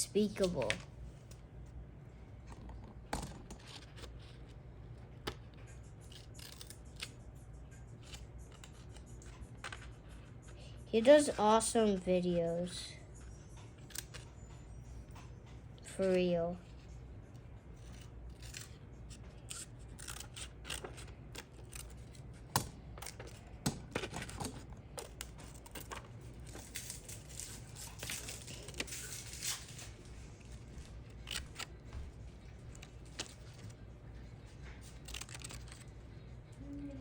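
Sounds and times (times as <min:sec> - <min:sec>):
scissors snipping paper: 0:05.2 - 0:09.9, 0:13.7 - 0:14.3, 0:17.7 - 0:36.0
paper rustling: 0:23.1 - 0:36.0.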